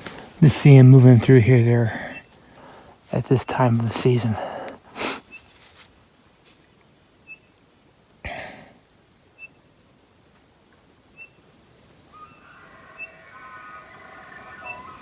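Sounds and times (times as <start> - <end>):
distant elk bugling: 11.9 - 15.0
small bird chirping: 12.1 - 15.0.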